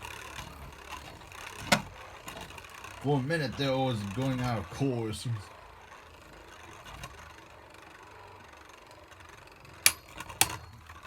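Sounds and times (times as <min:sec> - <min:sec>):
spinning tops whirring: 0:00.0 - 0:11.0
spinning tops clacking: 0:09.8 - 0:11.0.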